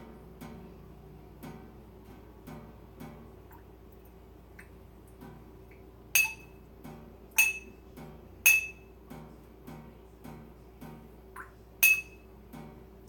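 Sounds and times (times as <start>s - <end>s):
glass clinking: 6.2s - 6.6s, 7.4s - 7.8s, 8.5s - 8.9s, 11.8s - 12.3s.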